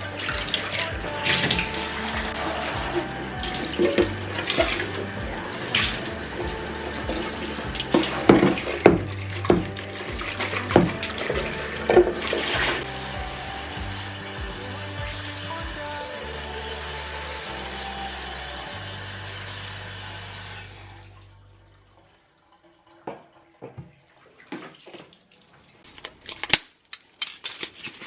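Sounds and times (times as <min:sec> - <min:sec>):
background music: 0:00.0 - 0:22.0
tap water running in spurts: 0:00.0 - 0:25.9.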